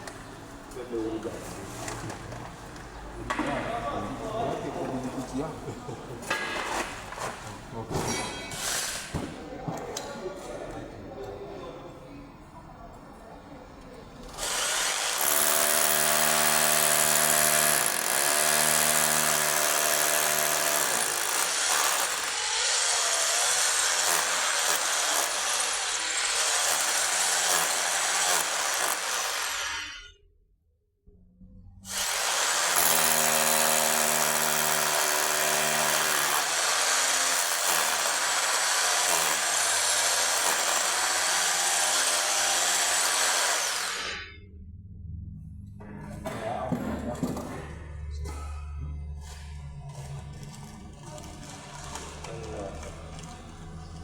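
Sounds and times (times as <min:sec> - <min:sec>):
power drill running: 0:14.4 - 0:30.0, 0:31.9 - 0:44.3.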